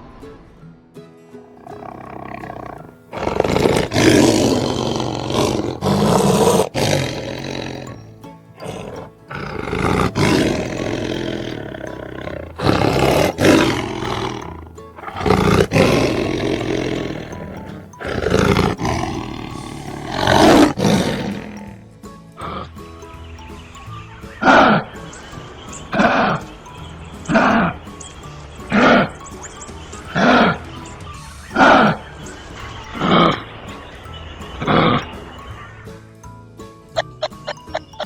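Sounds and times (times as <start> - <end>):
music: 0.0 - 38.0
big cat roaring: 1.6 - 8.0, 8.6 - 21.8, 24.4 - 24.9, 25.9 - 26.5, 27.3 - 27.8, 28.7 - 29.2, 30.2 - 30.6, 31.6 - 32.0.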